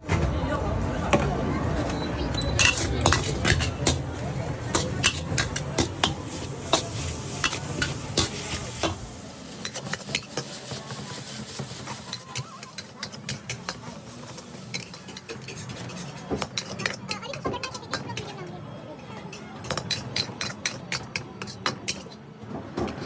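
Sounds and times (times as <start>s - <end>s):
utensils clanking and scraping pan: 1.9s - 18.4s, 19.3s - 23.0s
noodles sizzling: 2.6s - 18.3s.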